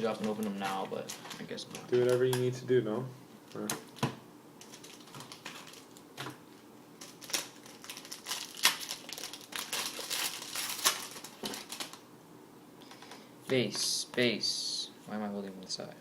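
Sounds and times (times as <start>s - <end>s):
plastic wrapper crinkling: 0.0s - 2.5s, 4.6s - 6.3s, 7.0s - 12.1s.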